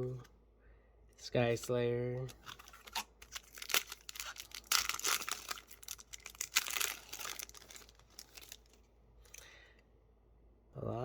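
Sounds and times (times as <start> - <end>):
foil wrapper crinkling and tearing: 2.3 - 9.5.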